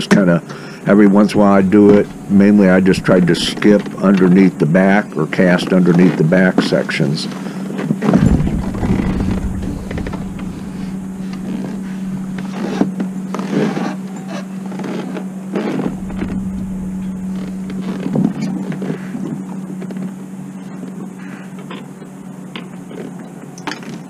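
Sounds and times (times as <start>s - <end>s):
motor humming: 1.2s - 4.4s, 8.1s - 13.5s, 15.8s - 18.9s.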